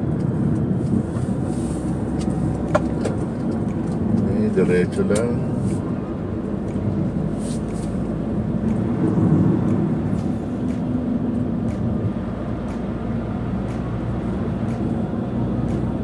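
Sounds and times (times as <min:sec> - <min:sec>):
car engine and tyre drone: 0:00.0 - 0:16.0
faint light ticks: 0:13.7 - 0:13.9.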